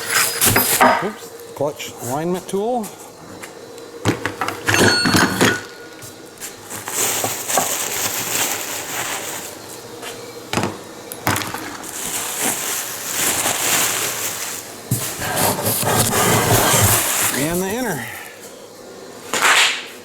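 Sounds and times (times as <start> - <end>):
rustling: 6.4 - 9.8, 11.8 - 18.5.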